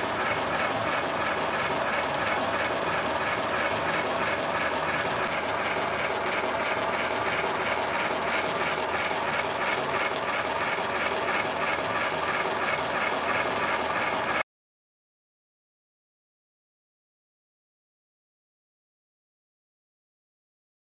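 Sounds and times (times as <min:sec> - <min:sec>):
high steady whine: 0:00.0 - 0:14.4
milling machine cutting gear: 0:00.0 - 0:14.4.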